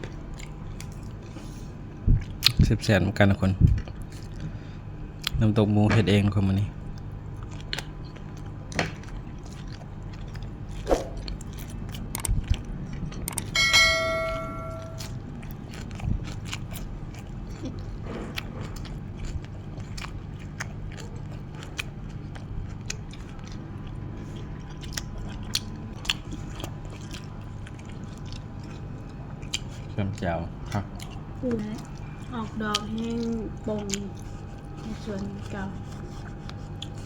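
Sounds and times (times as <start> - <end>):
person chewing food: 0.0 - 2.7, 3.6 - 5.5, 6.7 - 37.0
steady low hum: 0.0 - 37.0
brief metallic ring: 13.6 - 15.0.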